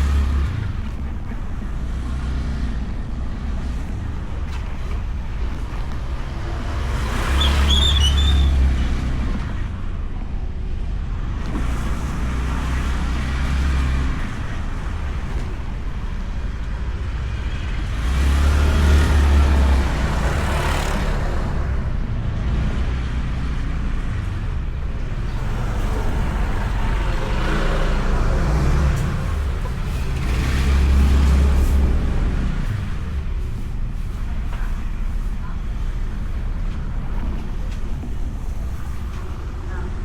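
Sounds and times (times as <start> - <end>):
motorcycle engine rumble: 0.0 - 40.0
brief high squeak: 7.3 - 8.8.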